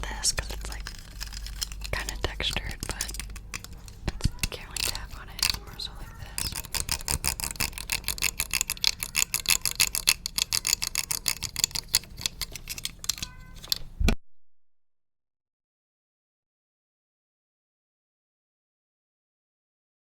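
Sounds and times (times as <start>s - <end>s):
fast sharp tapping: 0.0s - 13.4s.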